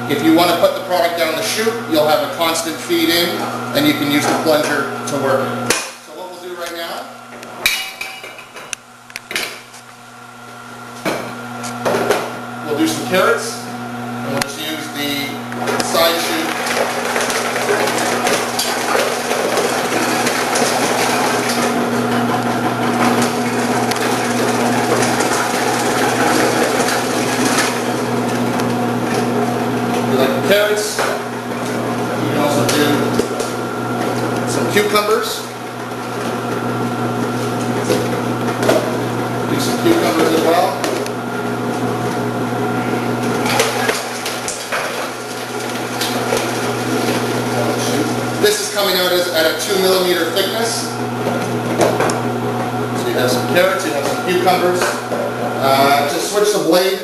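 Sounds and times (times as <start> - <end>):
motor hum: 0.0 - 57.0.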